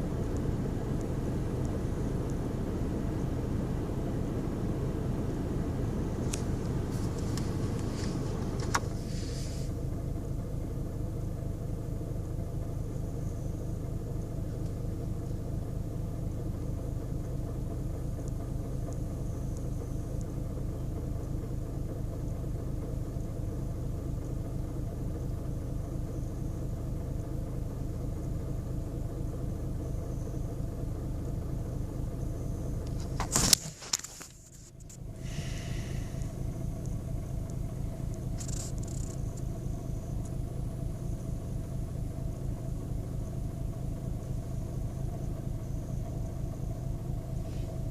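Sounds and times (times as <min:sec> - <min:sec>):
diesel engine idling: 0:00.0 - 0:47.9.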